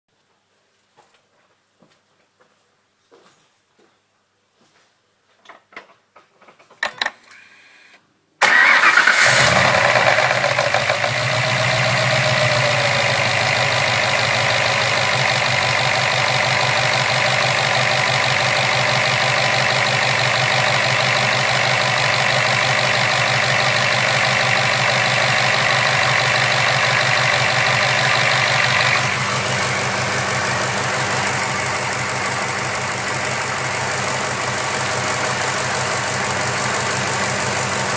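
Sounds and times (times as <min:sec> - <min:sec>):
car engine starting and idling: 0:08.4 - 0:37.9
engine knocking: 0:08.6 - 0:37.9.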